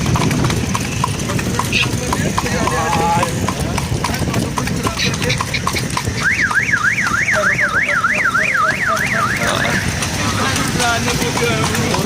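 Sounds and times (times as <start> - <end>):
hooves clip-clopping on road: 0.0 - 12.0
electronic warbling siren: 6.2 - 9.9.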